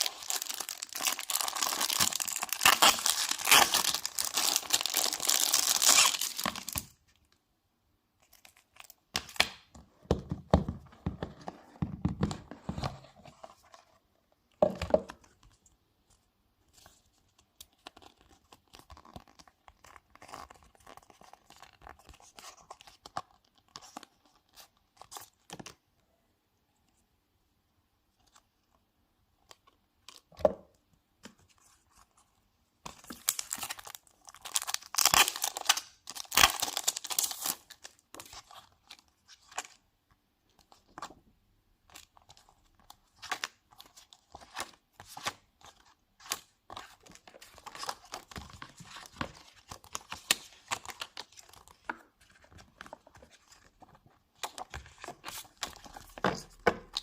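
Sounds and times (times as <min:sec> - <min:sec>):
packaging rustling: 0:00.0 - 0:06.9
packaging tearing and crackling: 0:00.0 - 0:06.9, 0:33.1 - 0:37.8.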